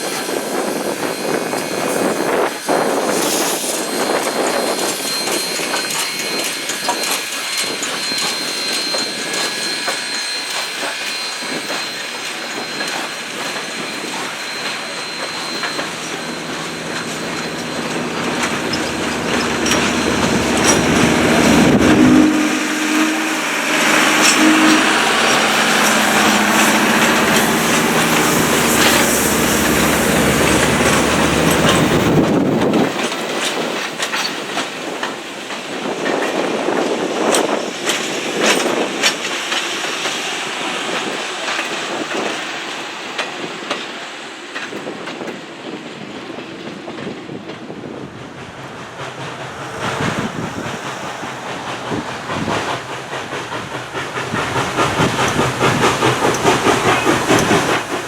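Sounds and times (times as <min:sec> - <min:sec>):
steam locomotive passing: 0:00.0 - 0:58.0
train cars clickety-clack: 0:00.0 - 0:58.0.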